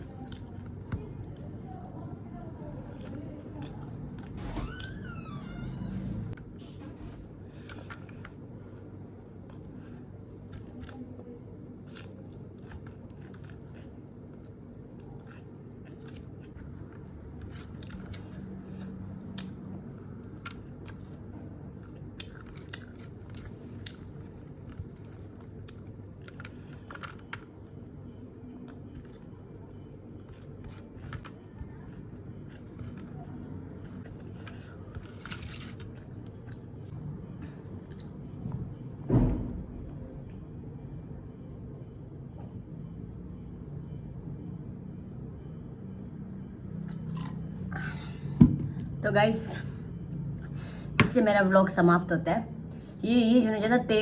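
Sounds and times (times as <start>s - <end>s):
low room hum: 0.0s - 54.0s
person chewing food: 7.6s - 27.9s, 28.6s - 38.9s.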